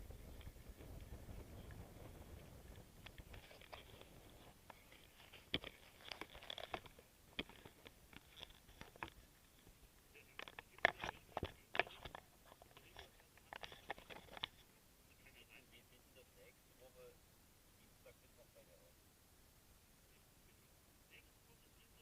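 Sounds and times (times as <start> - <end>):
handling noise clicks and crackles: 2.7 - 9.7, 10.3 - 14.7.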